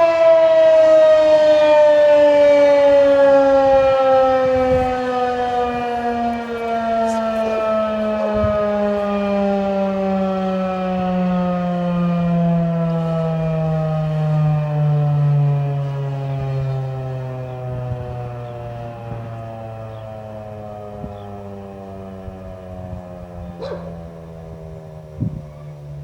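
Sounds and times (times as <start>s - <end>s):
outdoor warning siren winding down: 0.0s - 26.0s.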